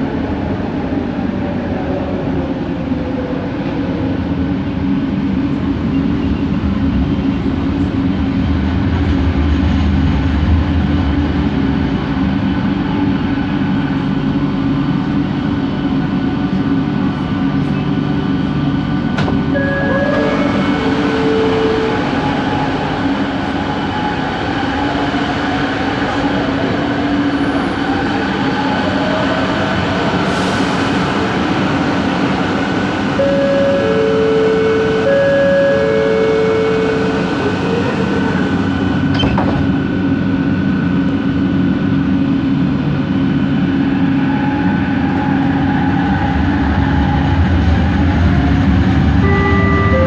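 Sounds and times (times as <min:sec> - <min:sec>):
train motor humming: 0:10.7 - 0:30.2, 0:31.1 - 0:43.4.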